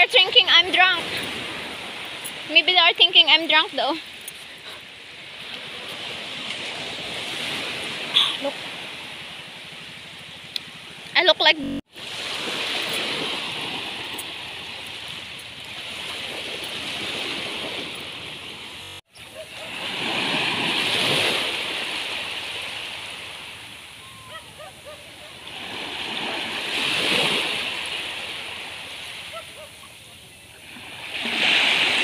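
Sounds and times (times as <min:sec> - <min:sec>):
ocean waves breaking on beach: 0:00.0 - 0:32.0.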